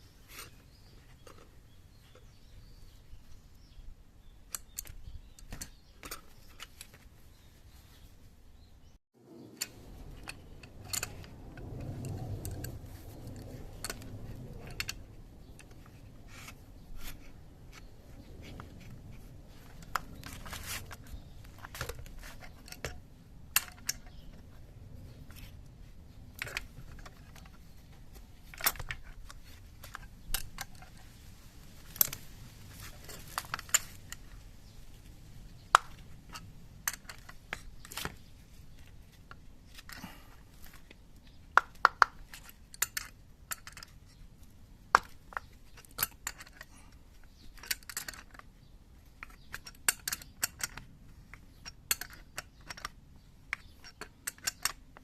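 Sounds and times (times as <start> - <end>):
metallic tool clicks and taps: 41.6 - 44.0, 49.2 - 55.0.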